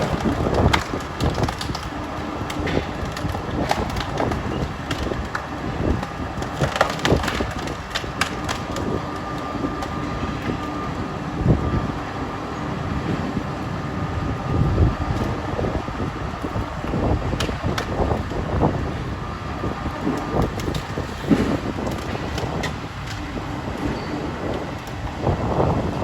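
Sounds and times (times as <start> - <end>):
wood cracking and splintering: 0.0 - 10.7, 14.8 - 23.6
wood chipper running: 0.0 - 26.0.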